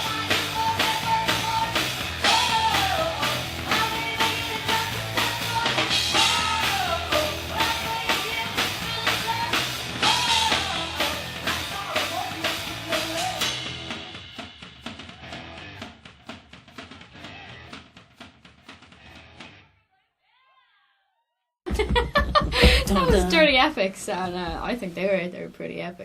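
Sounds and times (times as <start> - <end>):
woman singing: 0.0 - 13.4
rock band playing live: 0.0 - 16.1
drum hits: 21.7 - 23.8, 24.4 - 24.8.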